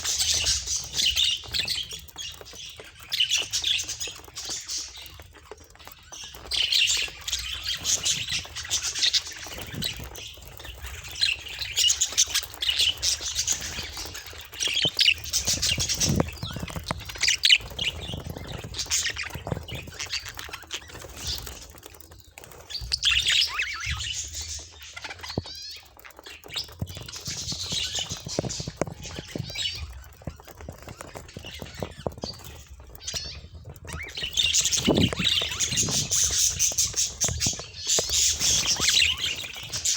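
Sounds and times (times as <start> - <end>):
budgerigars chattering: 33.1 - 39.9.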